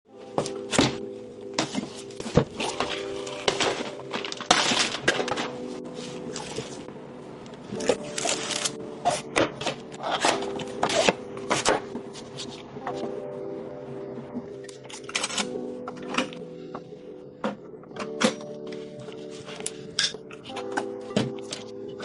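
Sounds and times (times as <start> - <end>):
background music: 0.0 - 22.0
handling cardboard and plastic packaging: 0.2 - 6.9, 7.7 - 13.2.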